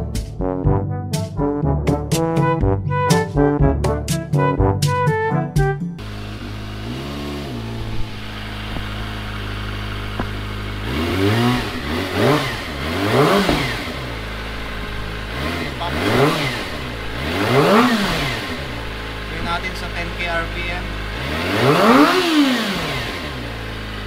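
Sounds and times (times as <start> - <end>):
motorcycle engine idling and revving: 6.0 - 24.0.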